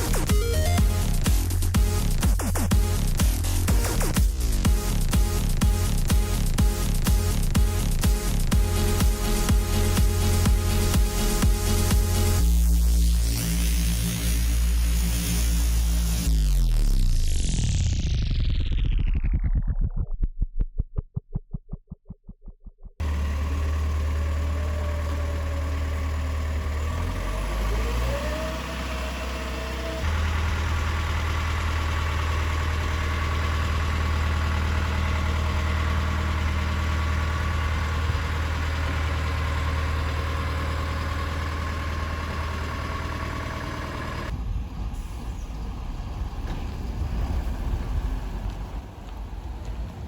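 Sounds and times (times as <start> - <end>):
excavator diesel engine humming: 0.0 - 13.4, 23.0 - 50.0
rising whine: 6.4 - 31.6.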